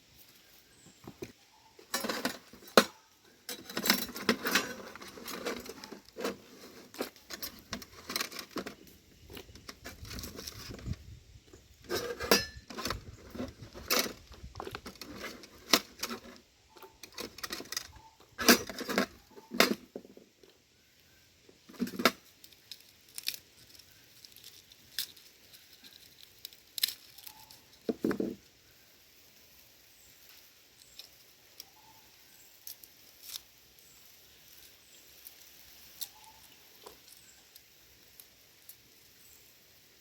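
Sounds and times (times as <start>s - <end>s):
rustling handling: 0.0s - 11.0s, 11.8s - 20.4s
utensils clinking on dishes: 11.9s - 13.0s.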